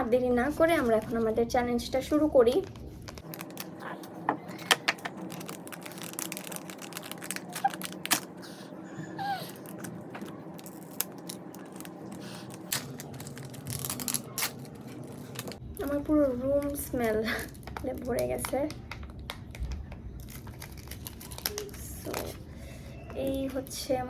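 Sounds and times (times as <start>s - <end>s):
steady low hum: 0.0s - 24.0s
packaging crinkling and tapping: 4.5s - 8.3s, 9.7s - 22.4s.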